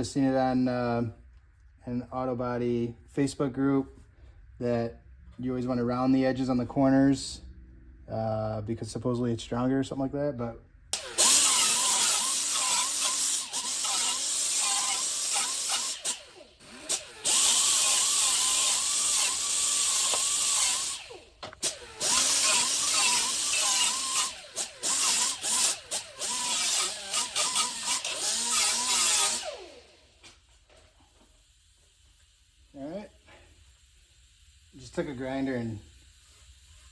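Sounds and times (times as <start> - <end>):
grinder motor whining: 11.0 - 30.4.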